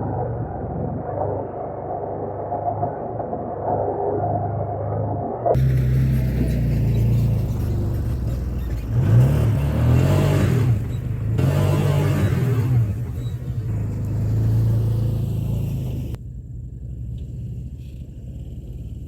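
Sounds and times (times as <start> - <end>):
engine revving: 5.5 - 16.2.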